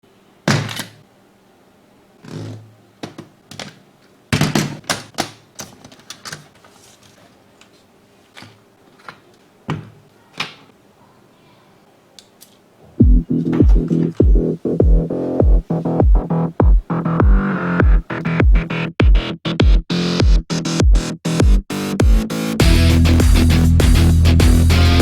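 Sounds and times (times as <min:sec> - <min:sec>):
box and packaging handling clicks: 0:04.4 - 0:10.7.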